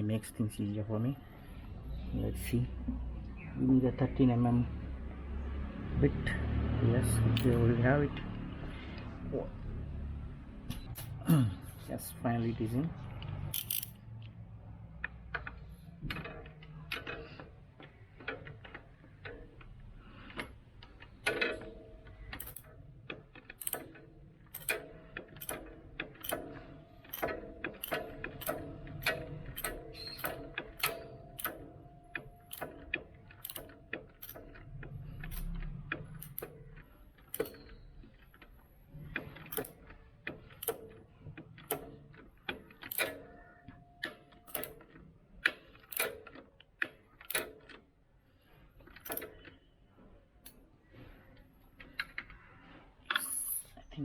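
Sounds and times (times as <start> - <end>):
ratchet wrench clicking: 13.2 - 14.0, 22.3 - 22.7, 23.4 - 36.5, 37.3 - 37.8, 39.4 - 39.8, 42.8 - 43.2, 44.4 - 44.8, 45.8 - 46.4, 47.2 - 47.7.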